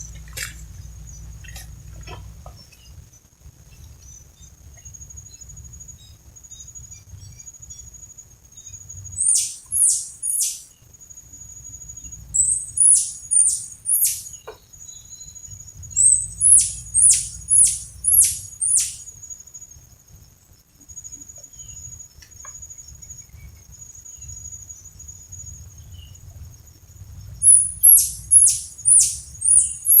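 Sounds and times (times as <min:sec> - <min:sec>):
faint high whine: 0:00.0 - 0:30.0
squirrel chirps: 0:09.1 - 0:10.7, 0:12.3 - 0:15.1, 0:15.9 - 0:19.1, 0:27.4 - 0:30.0.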